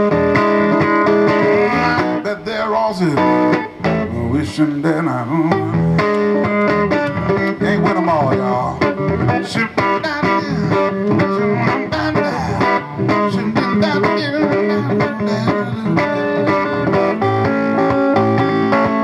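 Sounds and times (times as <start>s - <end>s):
bass guitar: 0.0s - 19.0s
blues band playing: 0.0s - 19.0s
electric guitar lead: 0.0s - 19.0s.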